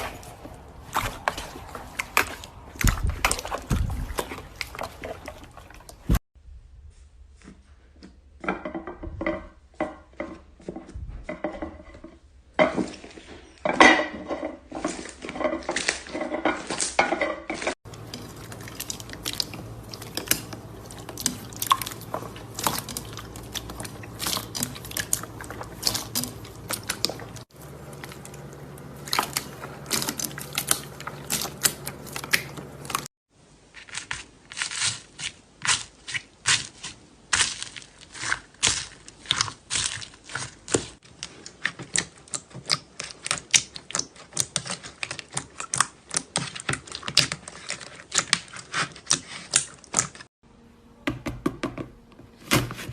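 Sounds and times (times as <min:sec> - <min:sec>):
slime squelching and popping: 0:17.9 - 0:33.1.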